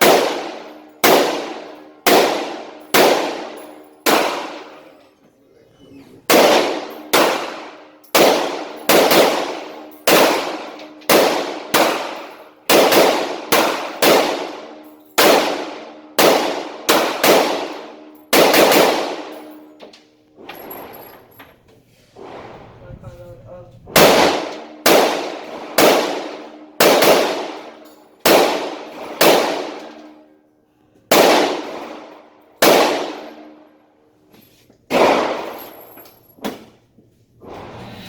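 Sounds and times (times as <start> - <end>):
rifle shots: 0.0 - 4.9, 6.2 - 19.7, 23.9 - 30.2, 31.1 - 33.6, 34.9 - 35.7.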